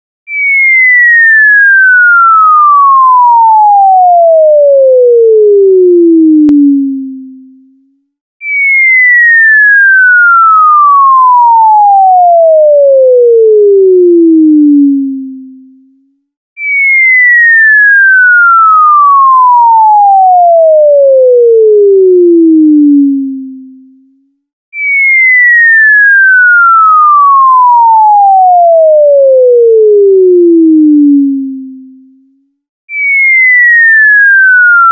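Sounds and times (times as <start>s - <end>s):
cartoon falling whistle: 0.3s - 3.8s, 8.4s - 12.2s, 16.6s - 20.3s, 24.7s - 28.6s, 32.9s - 34.9s.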